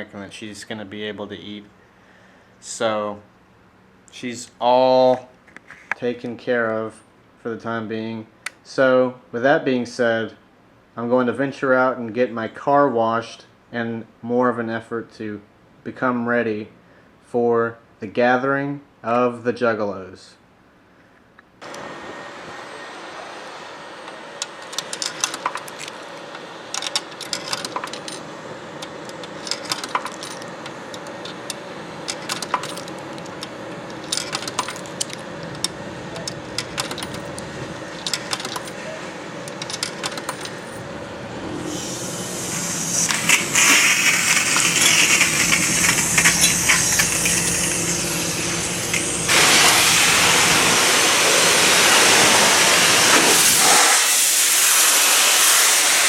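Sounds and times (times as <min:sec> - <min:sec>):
steady machine hum: 0:21.6 - 0:53.8
coins clinking and dropping: 0:24.7 - 0:26.0, 0:26.8 - 0:31.5, 0:32.1 - 0:35.2, 0:36.2 - 0:37.4, 0:38.0 - 0:38.8, 0:39.5 - 0:40.8
high-pressure water spray hissing: 0:41.6 - 0:56.0.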